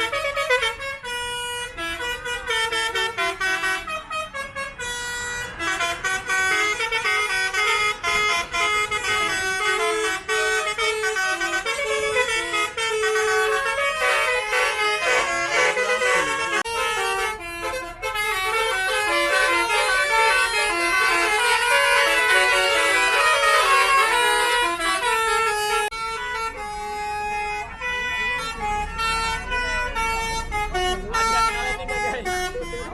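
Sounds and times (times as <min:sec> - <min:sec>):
musical air horn melodies: 0:00.0 - 0:32.9.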